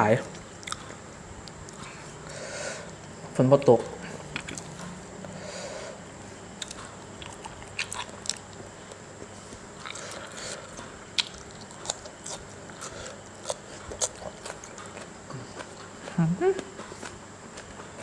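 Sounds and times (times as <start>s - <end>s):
person chewing food: 0.3s - 3.2s, 4.0s - 5.4s, 6.0s - 18.0s
mouth clicks and smacks: 4.3s - 4.7s.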